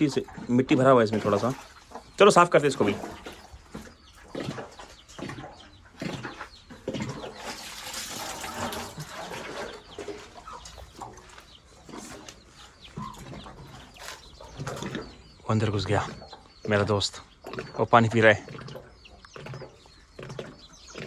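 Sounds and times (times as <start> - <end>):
running water: 0.0 - 5.4, 6.8 - 12.3
chickens clucking: 0.0 - 21.0.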